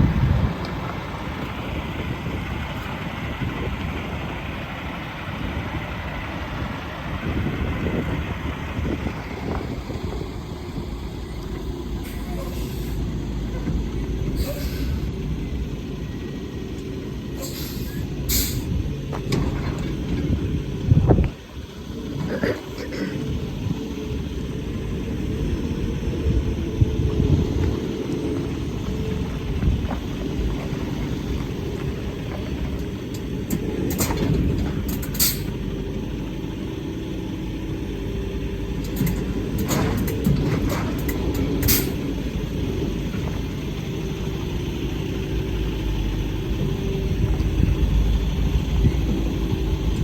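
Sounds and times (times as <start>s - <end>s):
truck engine rumbling: 0.0s - 50.0s
short air hisses: 14.4s - 15.1s, 17.4s - 18.7s.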